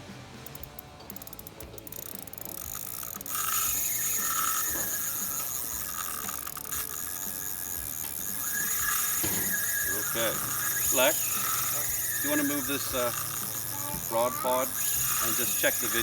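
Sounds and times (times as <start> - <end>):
fishing reel drag clicking: 0.4 - 16.0.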